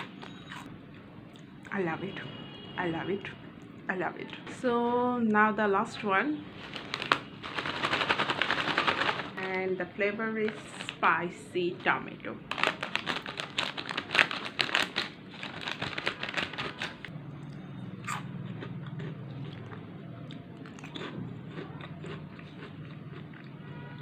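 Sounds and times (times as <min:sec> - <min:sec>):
chips crunching and crinkling: 0:06.5 - 0:09.5, 0:12.5 - 0:17.1, 0:18.1 - 0:23.6
chewing crunches: 0:12.5 - 0:24.0.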